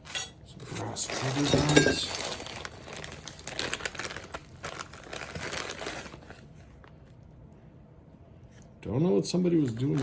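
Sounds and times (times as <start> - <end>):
bubble wrap crackling: 1.0 - 7.1, 9.6 - 10.0.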